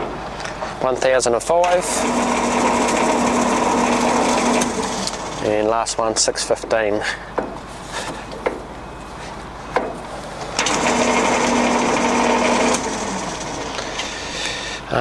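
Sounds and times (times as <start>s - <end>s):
lathe running: 0.0s - 5.7s, 9.2s - 14.5s
gear whine: 1.6s - 5.7s, 8.8s - 15.0s.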